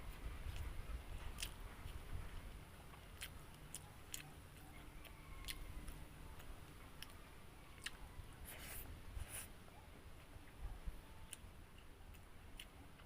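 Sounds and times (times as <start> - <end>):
person chewing with clicks: 0.5 - 2.0, 2.9 - 7.2, 7.8 - 8.0, 11.2 - 13.0.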